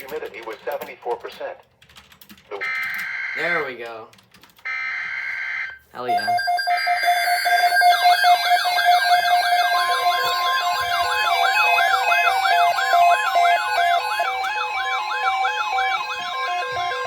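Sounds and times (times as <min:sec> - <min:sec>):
warbling alarm siren: 0:02.6 - 0:03.6, 0:04.7 - 0:17.0
beep tones: 0:04.7 - 0:17.0
steady alert tone: 0:04.7 - 0:17.0.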